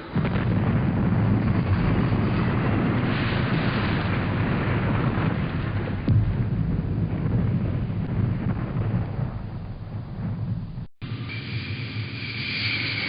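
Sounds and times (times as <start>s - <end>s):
rushing hiss: 11.2s - 13.0s.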